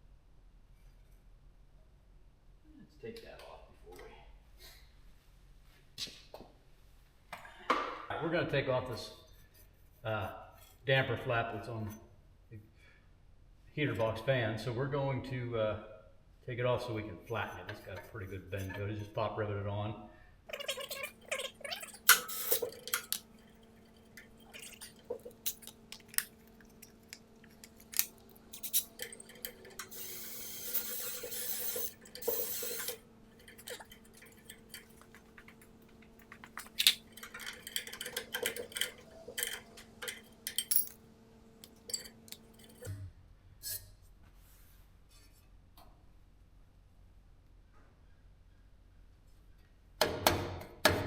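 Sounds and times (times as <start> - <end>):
harsh metal scraping: 20.7 - 40.7.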